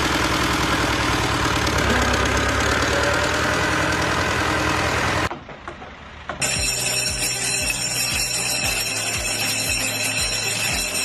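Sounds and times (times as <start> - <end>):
engine running: 0.0 - 11.0.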